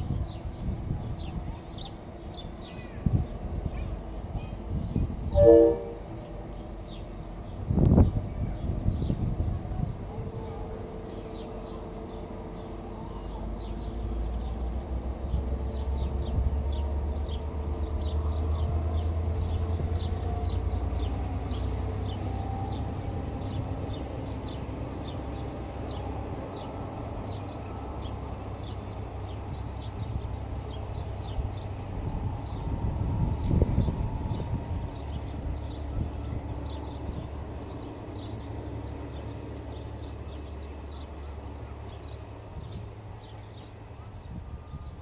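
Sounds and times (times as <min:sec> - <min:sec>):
low rumble of train: 0:00.0 - 0:45.0
short high chirps: 0:05.4 - 0:06.1.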